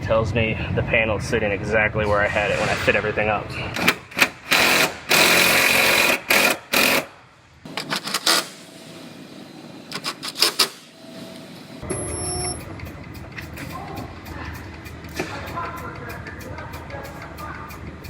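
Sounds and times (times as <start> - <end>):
power drill driving screws: 4.4 - 7.1.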